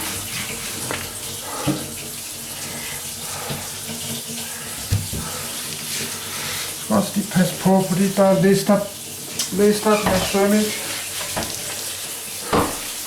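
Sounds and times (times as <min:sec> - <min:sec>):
wet cloth wiping floor: 0:00.0 - 0:13.0
dull knock: 0:12.5 - 0:12.9.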